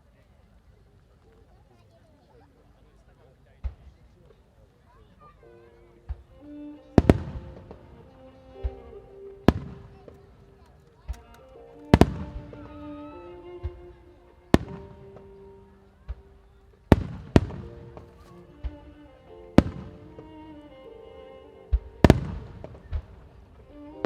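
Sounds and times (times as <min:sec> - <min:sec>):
music with held notes: 0:05.3 - 0:24.0.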